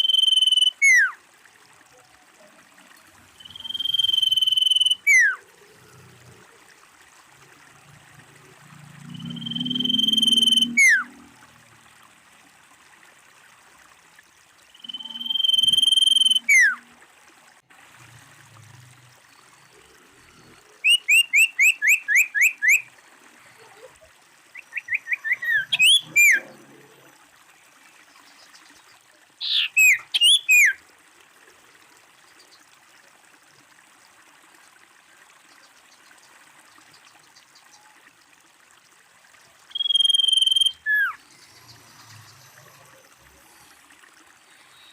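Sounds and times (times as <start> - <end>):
bird singing whistled phrases: 0.0 - 1.2, 3.4 - 5.4, 9.2 - 11.1, 14.8 - 16.8, 20.8 - 22.9, 24.5 - 26.5, 29.4 - 30.8, 39.7 - 41.2.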